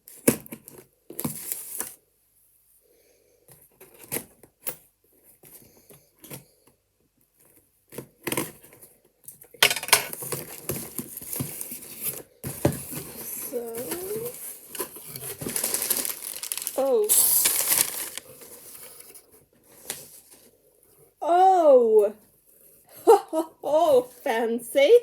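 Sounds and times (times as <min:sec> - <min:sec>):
packaging torn and crinkled: 0:14.0 - 0:18.6.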